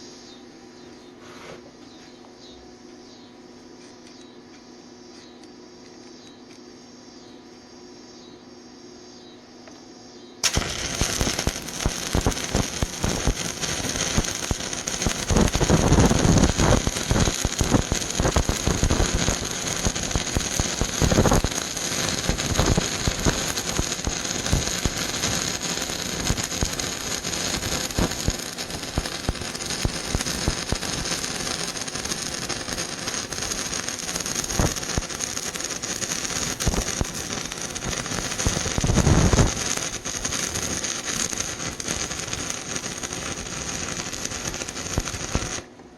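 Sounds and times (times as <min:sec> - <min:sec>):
welding arc crackling: 0:10.4 - 0:45.7.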